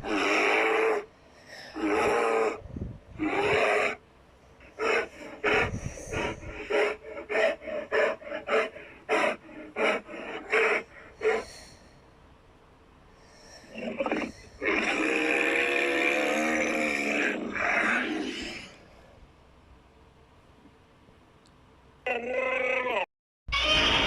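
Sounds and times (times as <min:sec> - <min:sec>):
monster roar: 0:00.0 - 0:01.1, 0:01.7 - 0:02.6, 0:03.2 - 0:04.0, 0:04.7 - 0:11.4, 0:13.7 - 0:18.8
huffing snorts: 0:04.7 - 0:11.7.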